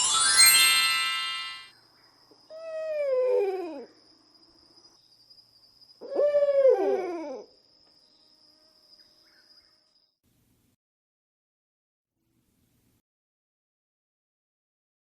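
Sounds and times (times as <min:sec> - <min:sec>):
owl hooting with echo: 0:06.0 - 0:07.5.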